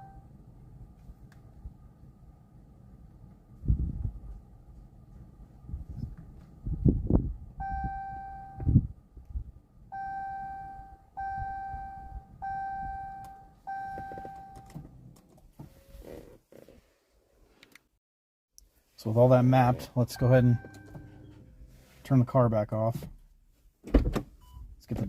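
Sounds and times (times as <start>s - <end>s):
car dashboard chime dinging: 7.6s - 8.7s, 10.0s - 14.8s, 20.2s - 21.4s.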